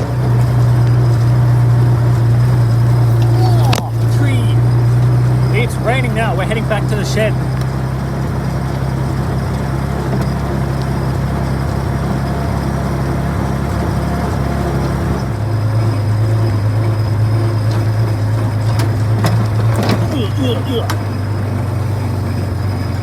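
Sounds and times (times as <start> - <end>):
tractor engine running: 0.0 - 23.0.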